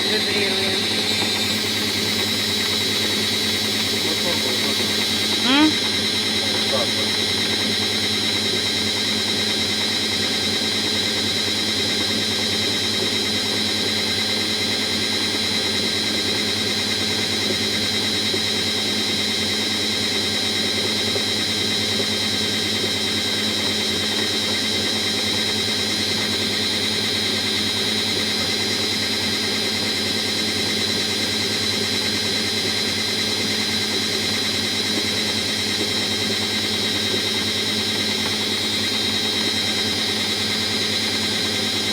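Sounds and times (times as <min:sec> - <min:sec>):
washing machine drum running: 0:00.0 - 0:10.5, 0:31.3 - 0:41.9.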